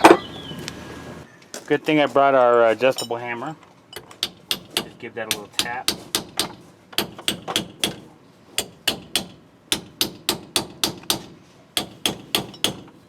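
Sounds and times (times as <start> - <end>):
hammer tapping on metal: 4.0 - 13.0.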